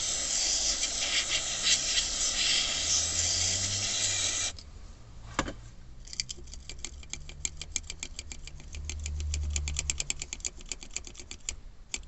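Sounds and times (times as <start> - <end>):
gear lever ticking rattle: 6.2 - 12.0.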